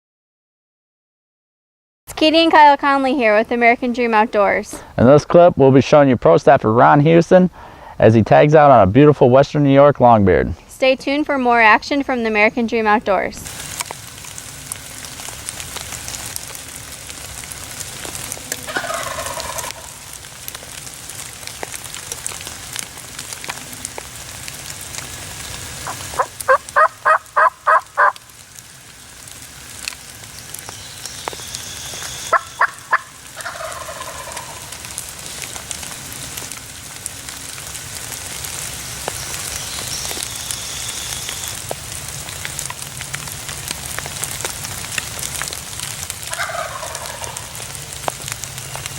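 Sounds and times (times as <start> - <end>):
steady rain: 13.4 - 48.9
turkey gobbling: 18.6 - 20.1, 25.8 - 28.3, 32.0 - 35.0, 46.3 - 47.7
turkey hen yelps: 18.7 - 20.0, 25.8 - 28.2, 32.0 - 34.7, 46.3 - 47.6.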